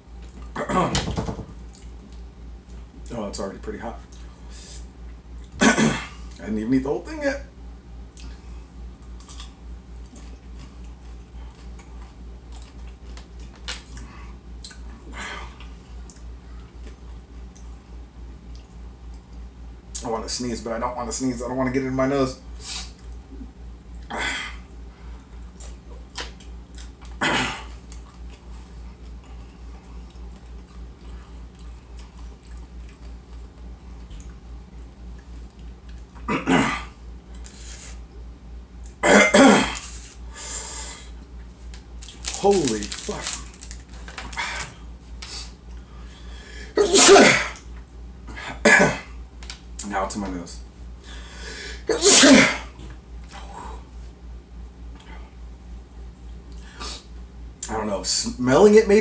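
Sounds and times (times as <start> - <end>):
low pulsing hum: 0.0 - 57.6
man sneezing: 5.6 - 6.2, 27.2 - 27.7, 36.3 - 37.0, 39.0 - 40.0, 46.7 - 47.6, 48.3 - 49.1, 51.6 - 52.7
chewing crunchy chip: 9.0 - 14.0, 41.7 - 45.4.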